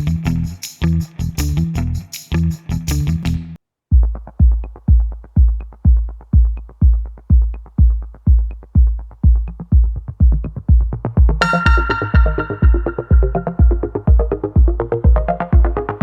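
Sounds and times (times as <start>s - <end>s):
electronic music with kick drum: 3.9s - 16.0s.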